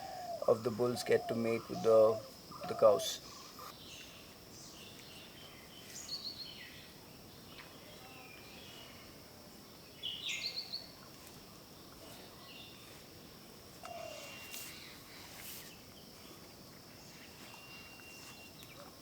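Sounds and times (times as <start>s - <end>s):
birds chirping: 0.0s - 9.0s.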